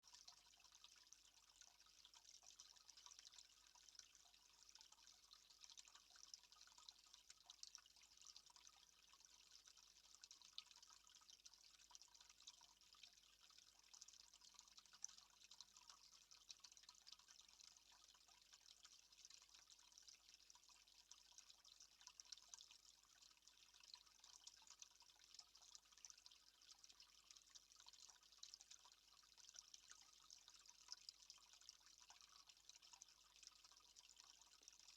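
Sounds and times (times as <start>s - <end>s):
faint trickling water: 0.0s - 34.9s.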